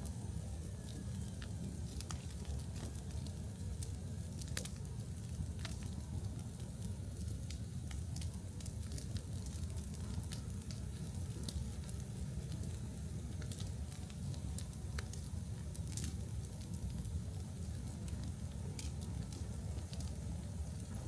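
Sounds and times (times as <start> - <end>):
fire crackling and popping: 0.0 - 21.0
low rumble of fire: 0.0 - 21.0.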